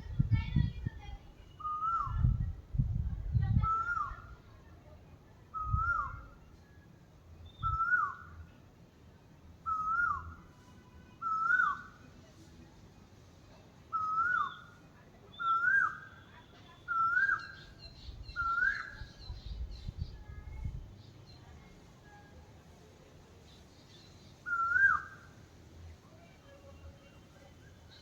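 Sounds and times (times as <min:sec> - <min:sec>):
bird whistled call: 0:07.5 - 0:08.2, 0:09.7 - 0:10.3, 0:11.2 - 0:11.9, 0:13.9 - 0:14.7, 0:15.4 - 0:16.3, 0:16.9 - 0:19.5, 0:24.5 - 0:25.3.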